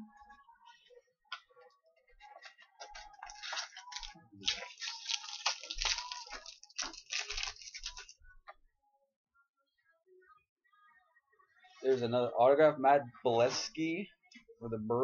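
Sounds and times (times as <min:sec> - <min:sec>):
card wrappers crinkling and tearing: 0:02.8 - 0:08.2.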